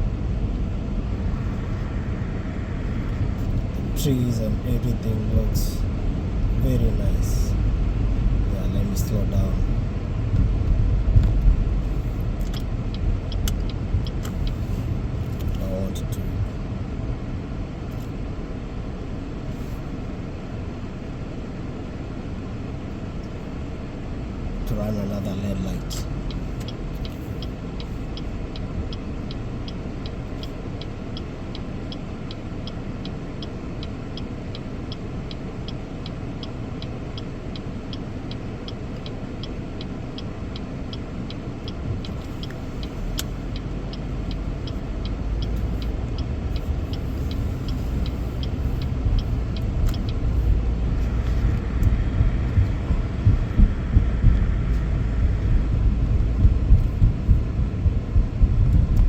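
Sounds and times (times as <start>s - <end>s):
road and engine rumble: 0.0s - 59.0s
turn signal ticking: 0.0s - 59.0s.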